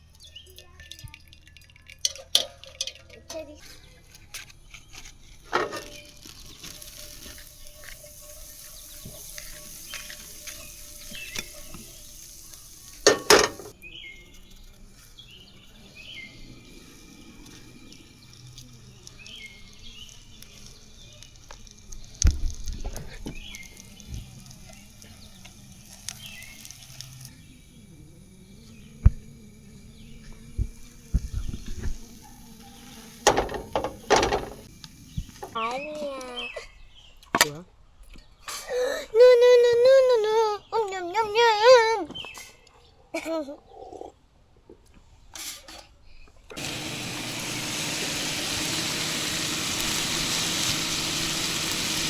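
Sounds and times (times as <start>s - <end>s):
food sizzling: 5.6s - 13.8s, 16.1s - 35.8s, 46.6s - 52.0s
utensils knocking and clinking: 12.8s - 13.7s.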